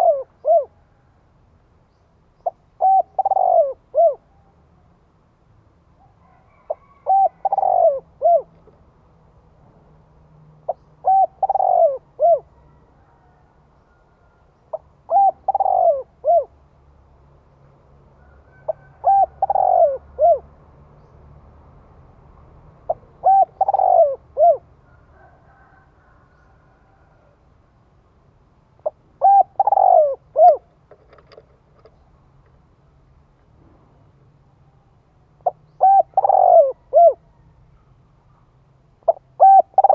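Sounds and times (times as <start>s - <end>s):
dove cooing: 0.0s - 1.0s, 2.4s - 4.5s, 6.3s - 8.8s, 10.7s - 14.0s, 14.7s - 16.6s, 18.3s - 20.5s, 22.8s - 27.4s, 28.8s - 32.0s, 35.4s - 37.4s, 39.0s - 39.9s.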